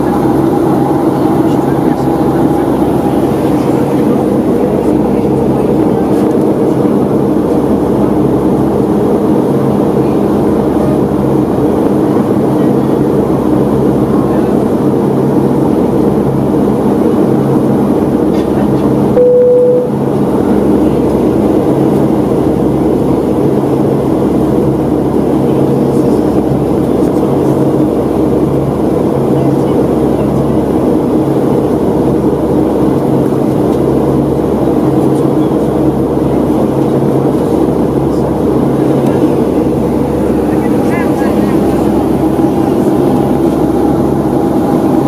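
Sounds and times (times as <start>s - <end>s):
airplane cabin airflow rush: 0.0s - 45.0s
engine hum: 0.0s - 45.0s
single cabin chime tone: 19.2s - 20.0s.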